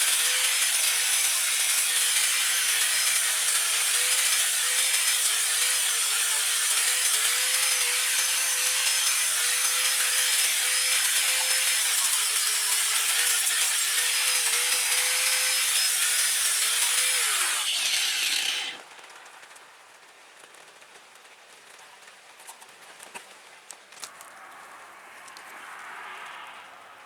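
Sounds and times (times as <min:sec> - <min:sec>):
power tool grinding metal: 0:00.0 - 0:18.8.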